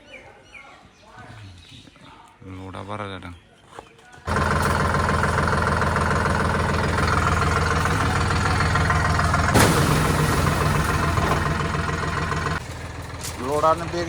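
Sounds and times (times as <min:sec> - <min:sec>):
engine running: 0:04.3 - 0:14.0.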